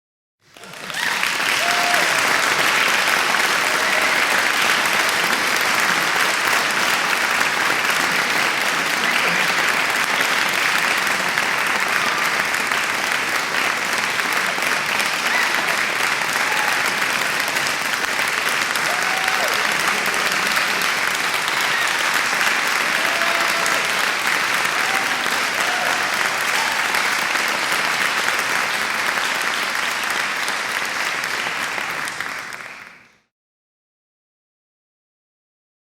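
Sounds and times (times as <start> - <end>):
large crowd applauding: 0.4 - 33.3
audience shouts: 0.6 - 5.9, 15.0 - 17.2, 18.7 - 27.2.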